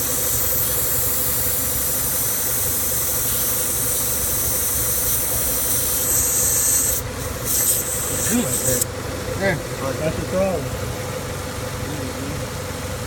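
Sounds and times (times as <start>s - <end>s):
car engine idling: 7.0s - 13.0s.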